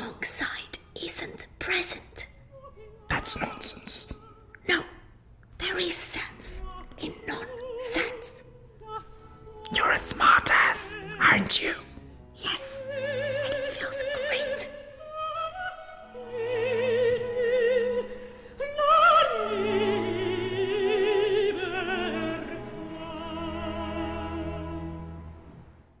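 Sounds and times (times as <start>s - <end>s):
operatic singing: 5.6s - 26.0s
orchestral accompaniment: 16.1s - 26.0s.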